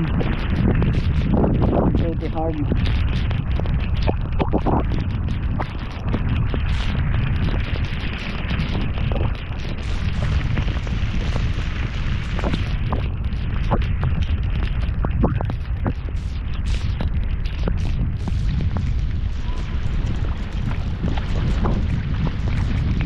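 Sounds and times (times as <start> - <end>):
raindrops tapping nearby: 0.0 - 23.0
heavy rain hissing: 5.8 - 14.0, 14.6 - 23.0.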